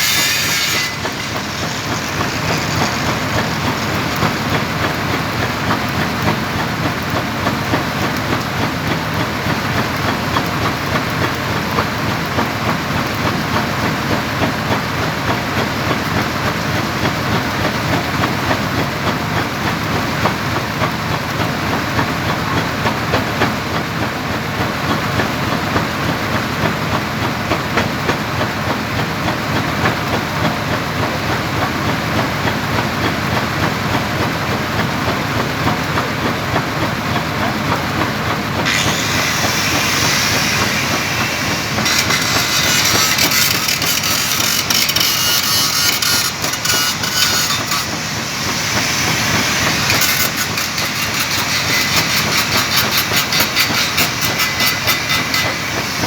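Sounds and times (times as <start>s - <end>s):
welding arc crackling hiss: 0.0s - 6.0s, 38.7s - 56.0s
brighter hiss: 47.9s - 50.1s.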